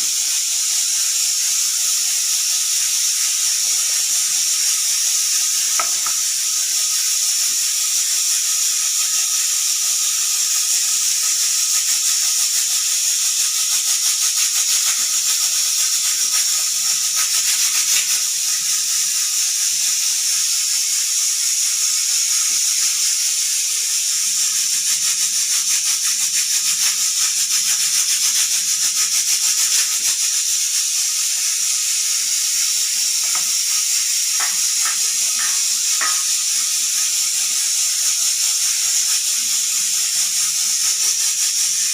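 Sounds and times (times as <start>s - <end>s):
pressure cooker hissing steam: 0.0s - 41.9s
whistle weight rattling: 33.2s - 37.2s.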